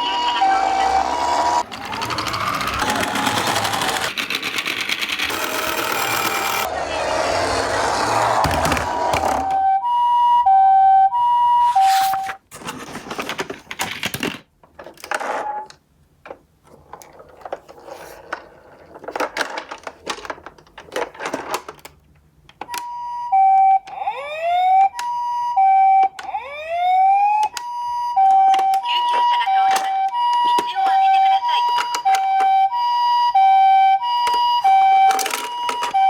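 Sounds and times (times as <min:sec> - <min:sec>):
rising siren wail: 0:00.0 - 0:03.2, 0:06.0 - 0:12.3, 0:23.9 - 0:25.0, 0:25.6 - 0:27.6
two-tone ambulance siren: 0:00.0 - 0:04.1, 0:05.3 - 0:12.3, 0:22.7 - 0:36.0
toy cars clattering down cardboard: 0:16.8 - 0:22.0, 0:35.0 - 0:36.0.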